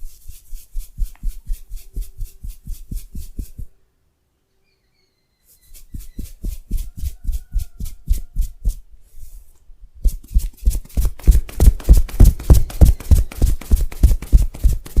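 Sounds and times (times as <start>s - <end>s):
soft rubbing: 0.0s - 3.8s, 5.4s - 15.0s
hands slapping body in massage: 10.0s - 15.0s.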